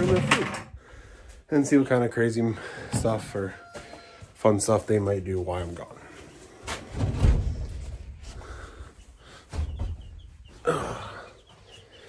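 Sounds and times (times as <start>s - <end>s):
bumps and rustling: 0.0s - 1.5s, 2.9s - 11.9s
breathy puffs: 8.2s - 9.8s, 10.6s - 12.0s
baby chicks peeping: 8.8s - 12.0s.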